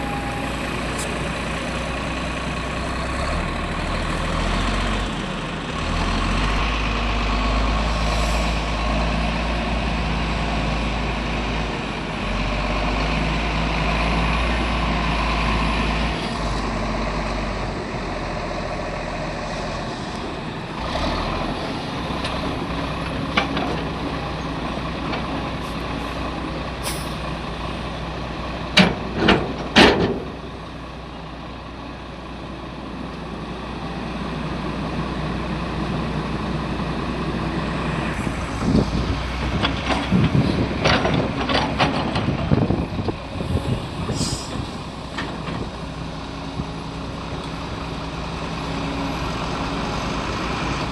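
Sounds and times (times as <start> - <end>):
heavy diesel engines running: 0.0 - 50.9.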